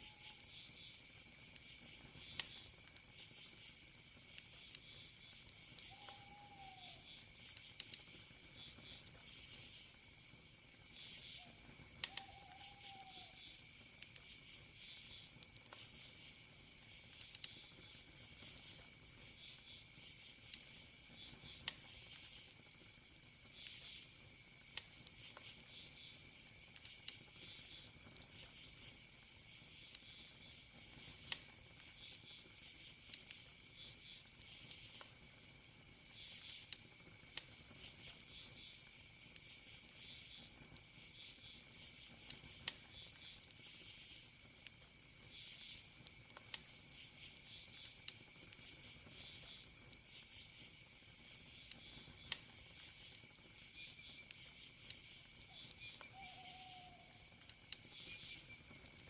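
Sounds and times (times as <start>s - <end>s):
campfire crackling: 0.0s - 59.0s
cricket trill: 0.0s - 59.0s
pulsed insect chirping: 45.0s - 59.0s.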